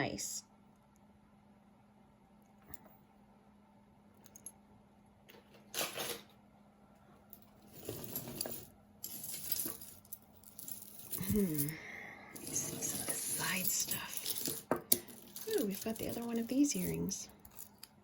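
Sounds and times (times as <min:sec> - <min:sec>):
jewelry clinking and jangling: 0:07.4 - 0:18.0.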